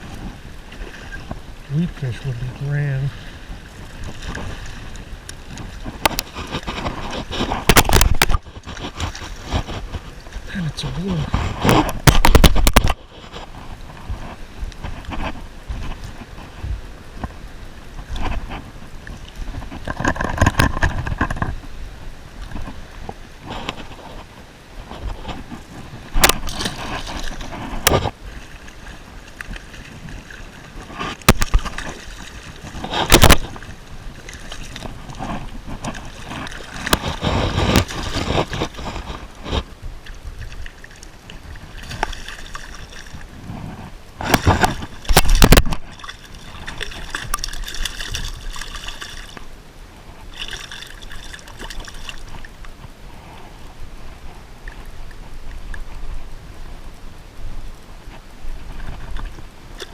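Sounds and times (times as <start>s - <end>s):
water sloshing and gurgling: 0.0s - 59.9s
handling noise: 41.5s - 49.5s.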